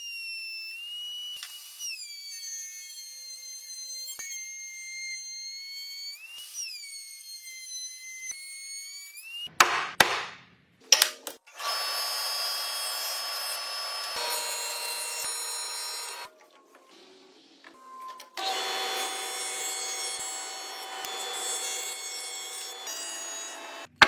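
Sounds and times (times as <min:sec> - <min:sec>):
sharp knocks on wood: 0:09.6 - 0:10.4
power tool motor whine: 0:11.6 - 0:16.3, 0:18.4 - 0:23.9
power tool running on wood: 0:11.6 - 0:16.3, 0:18.4 - 0:23.9.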